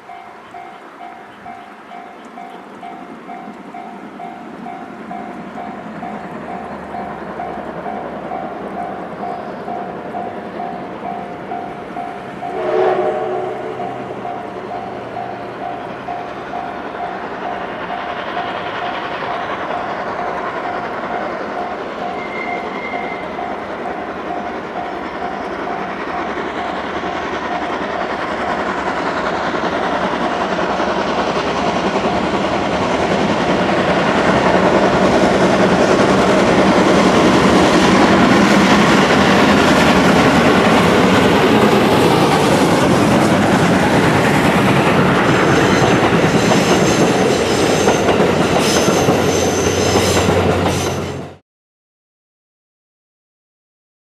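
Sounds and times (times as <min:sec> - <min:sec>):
steam locomotive passing: 0:00.0 - 0:51.4
wheels clattering over rails: 0:24.3 - 0:51.1.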